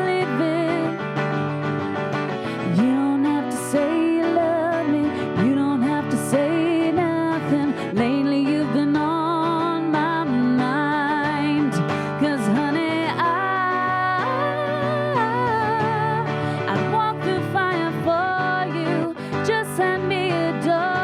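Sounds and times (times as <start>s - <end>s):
woman singing with vibrato: 0.0s - 1.1s, 2.5s - 21.0s
acoustic guitar: 0.0s - 21.0s.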